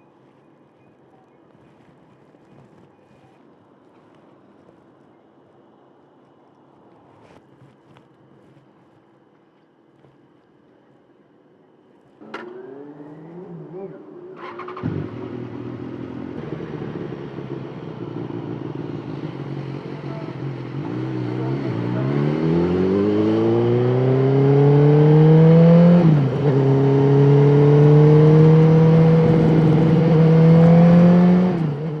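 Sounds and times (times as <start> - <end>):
vehicle engine accelerating: 12.2 - 32.0.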